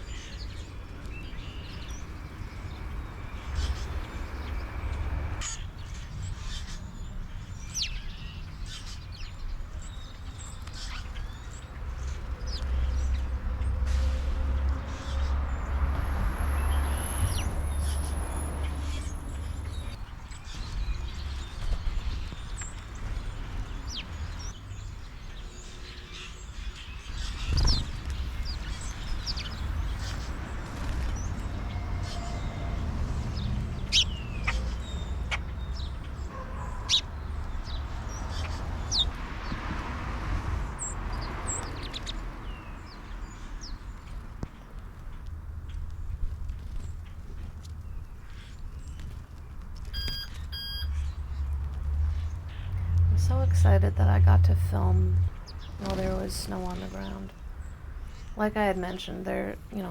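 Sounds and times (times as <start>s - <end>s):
low outdoor rumble: 0.0s - 6.5s, 27.0s - 39.3s, 50.8s - 59.9s
birds chirping: 0.0s - 59.9s
harsh crow-like calls: 36.1s - 37.8s.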